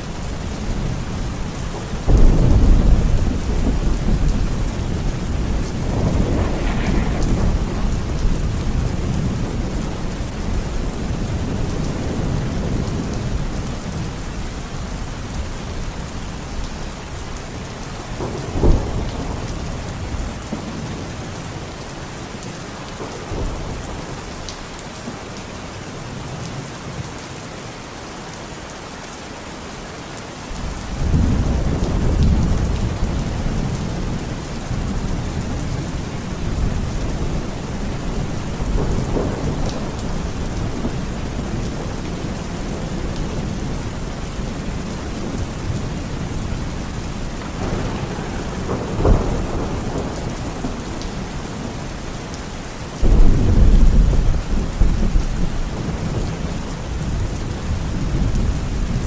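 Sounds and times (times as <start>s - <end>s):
thunder rumbling: 0.0s - 14.2s, 18.1s - 21.7s, 30.6s - 52.4s, 53.0s - 59.0s
steady rain: 0.0s - 59.0s.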